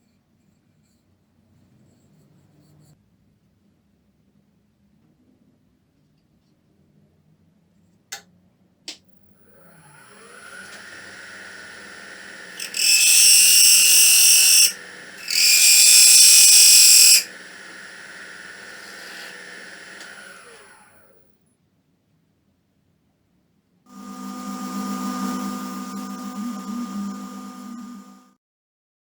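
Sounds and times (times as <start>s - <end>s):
wood lathe humming: 9.6s - 21.1s, 23.9s - 28.3s
tool hissing against spinning wood: 10.0s - 21.0s.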